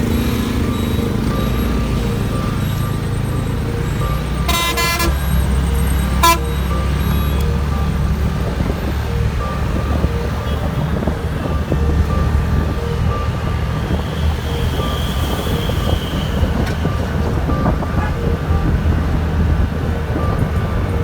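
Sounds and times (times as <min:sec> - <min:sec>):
road traffic rumble: 0:00.0 - 0:21.0
vehicle horn honking: 0:04.3 - 0:07.5, 0:17.8 - 0:18.3.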